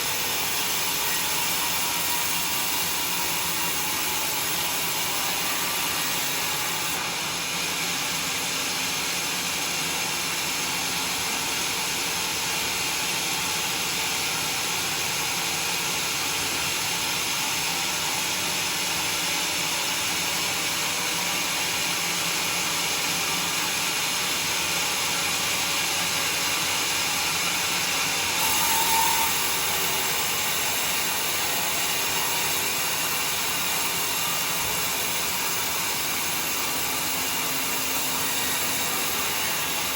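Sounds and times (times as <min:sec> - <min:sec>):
sawmill blade cutting log: 0:00.0 - 0:07.0, 0:25.0 - 0:39.9.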